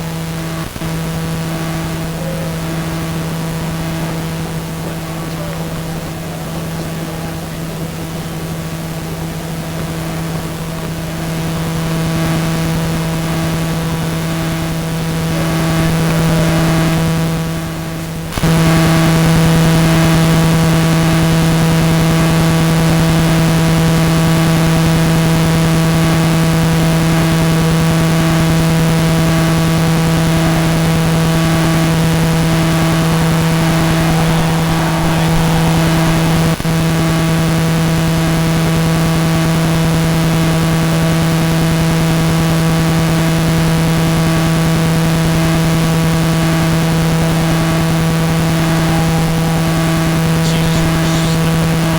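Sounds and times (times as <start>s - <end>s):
steady buzzing hum: 0.0s - 51.9s.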